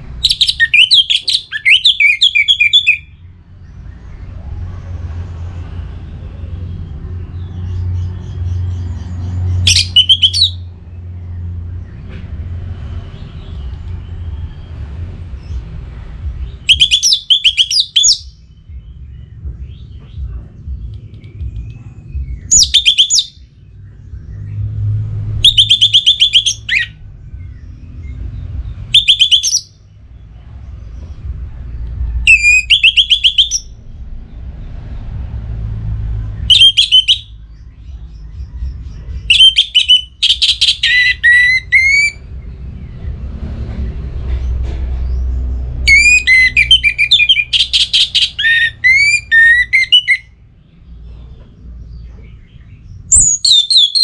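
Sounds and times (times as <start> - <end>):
low rumble: 18.3 - 25.7, 29.7 - 32.8, 33.6 - 36.5, 42.1 - 47.6.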